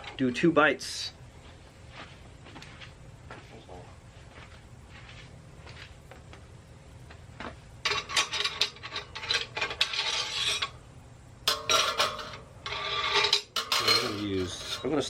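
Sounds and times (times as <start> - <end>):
tire irons clinking on metal: 7.8 - 10.8, 11.4 - 15.0.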